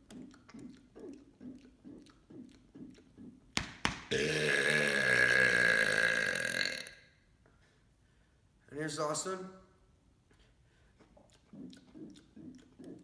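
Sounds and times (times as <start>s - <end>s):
man burping: 4.1s - 7.0s.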